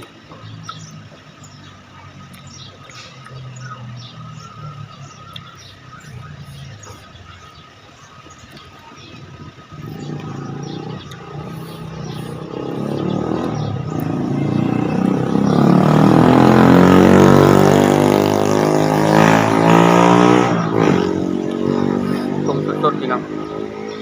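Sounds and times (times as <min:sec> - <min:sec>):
vehicle driving past: 0:09.7 - 0:24.0.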